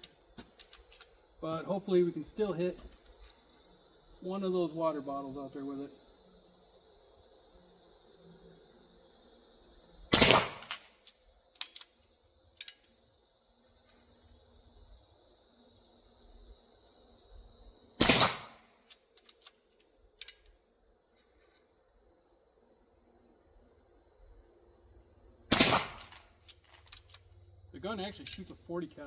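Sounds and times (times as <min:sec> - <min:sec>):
insects chirring: 0:00.0 - 0:29.0
air rifle shots: 0:10.1 - 0:10.9, 0:18.0 - 0:18.6, 0:25.5 - 0:26.3
faint rifle clicks: 0:18.0 - 0:20.6.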